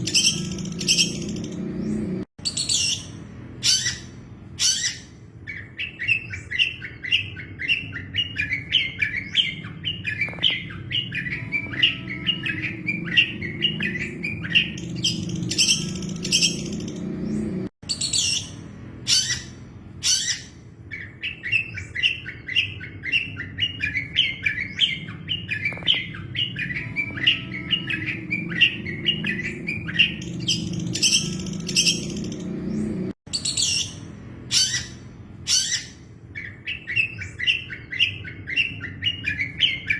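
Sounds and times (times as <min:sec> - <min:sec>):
bird chattering song: 0:00.0 - 0:39.9
bird high calls: 0:00.0 - 0:39.9.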